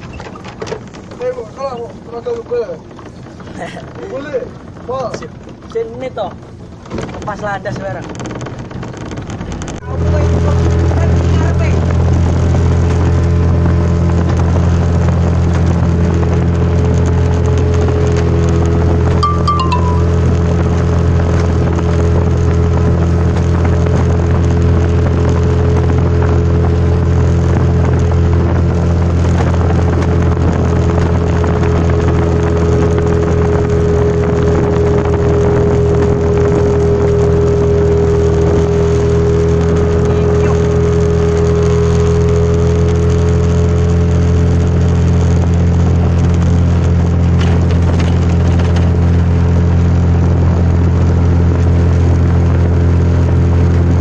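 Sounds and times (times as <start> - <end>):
speedboat engine running: 0.0 - 54.0
rushing water noise: 9.2 - 54.0
higher engine tone: 13.3 - 47.7.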